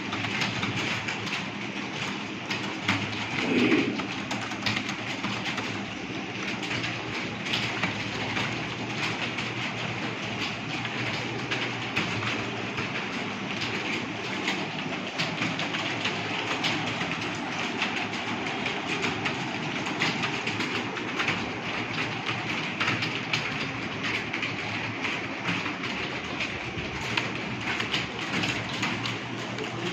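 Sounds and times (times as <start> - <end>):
fast keyboard typing: 0.0 - 29.9.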